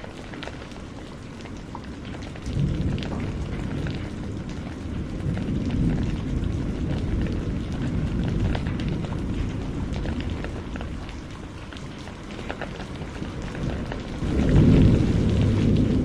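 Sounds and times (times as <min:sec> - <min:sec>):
rain patter: 0:00.0 - 0:16.0
rolling thunder: 0:02.2 - 0:11.3, 0:12.6 - 0:16.0.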